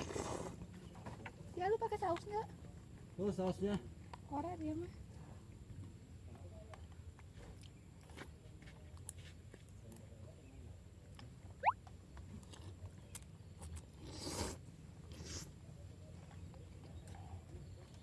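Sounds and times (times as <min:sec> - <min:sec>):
crunching and chewing snacks: 0:12.0 - 0:15.4.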